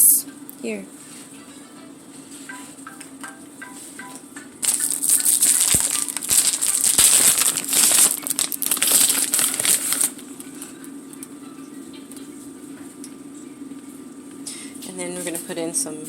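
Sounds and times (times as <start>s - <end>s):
plastic bag crinkling: 4.6s - 10.2s.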